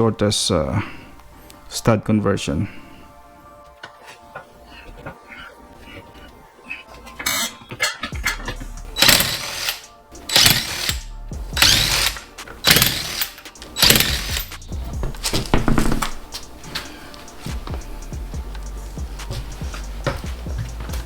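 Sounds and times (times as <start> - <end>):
background music: 0.0 - 21.0
impact wrench rattling: 7.3 - 16.2.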